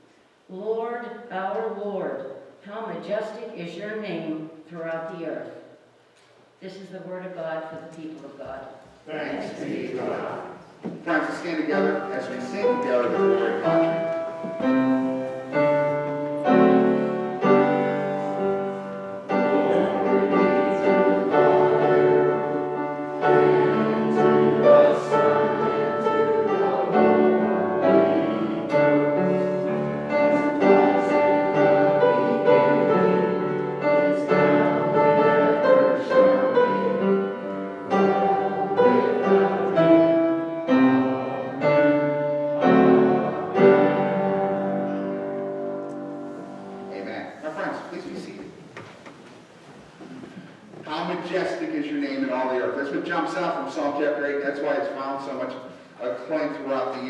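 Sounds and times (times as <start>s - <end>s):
piano playing a hymn: 9.5s - 48.8s.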